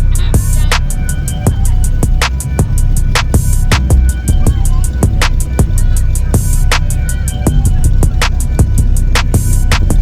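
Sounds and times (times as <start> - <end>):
hip hop beat with bass: 0.0 - 10.0.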